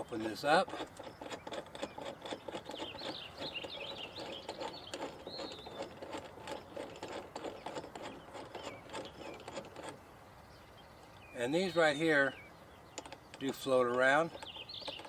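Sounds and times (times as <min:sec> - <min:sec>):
birds chirping: 0:00.0 - 0:15.0
plastic clicks and rattles: 0:13.0 - 0:15.0.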